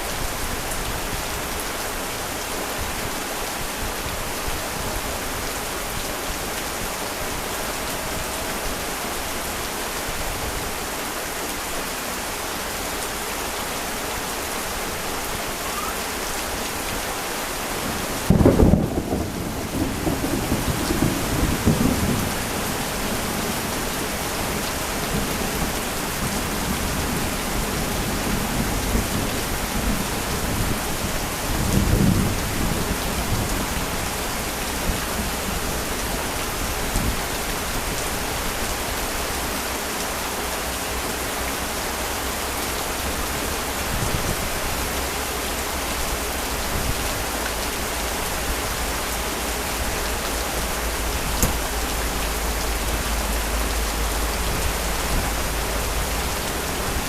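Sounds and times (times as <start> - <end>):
heavy rain pouring: 0.0 - 57.0
low rumble of thunder: 17.9 - 36.1.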